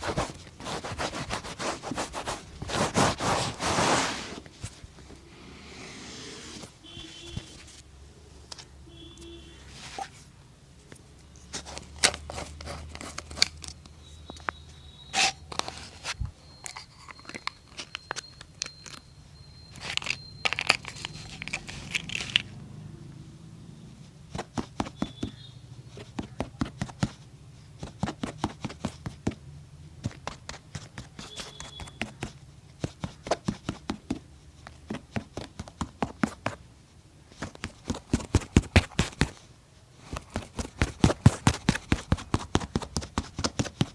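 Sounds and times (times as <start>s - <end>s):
brush rubbing leather boot: 0.0s - 4.5s.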